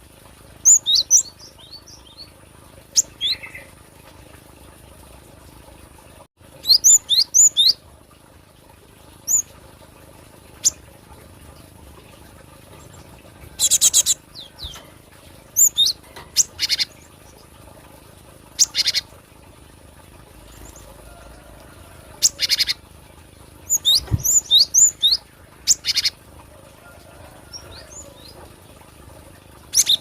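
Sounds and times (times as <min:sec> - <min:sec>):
bird harsh buzzy calls: 0:18.6 - 0:19.1.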